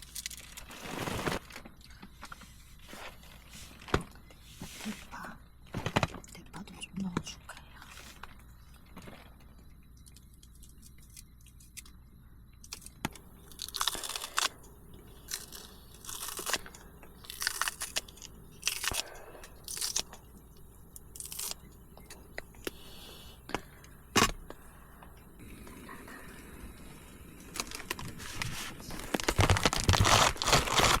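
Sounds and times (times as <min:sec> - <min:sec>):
plastic packaging crinkling: 0:00.0 - 0:04.0, 0:12.7 - 0:20.2, 0:27.4 - 0:31.0.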